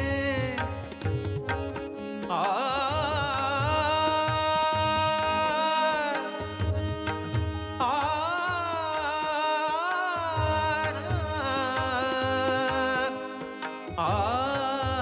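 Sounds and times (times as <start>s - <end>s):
hand drum rhythm: 0.0s - 2.0s
wordless wavering melody: 0.0s - 15.0s.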